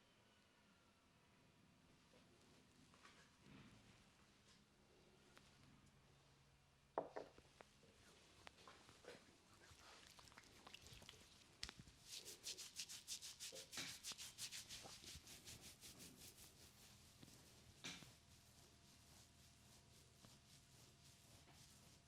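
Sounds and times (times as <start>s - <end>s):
hands rubbing hair and scalp: 10.0s - 22.0s.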